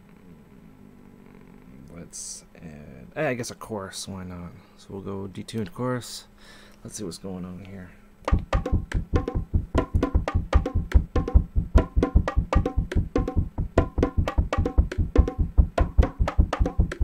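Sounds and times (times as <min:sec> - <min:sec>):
drum machine tom hits: 0:08.3 - 0:17.0.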